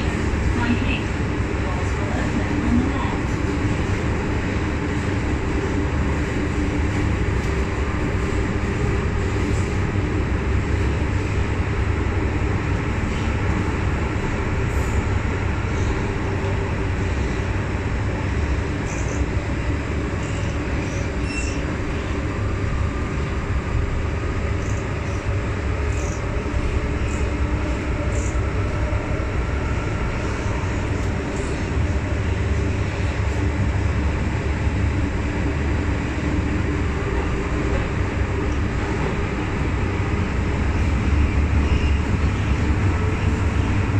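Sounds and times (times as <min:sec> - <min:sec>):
train wheels rumbling on rails: 0:00.0 - 0:43.9.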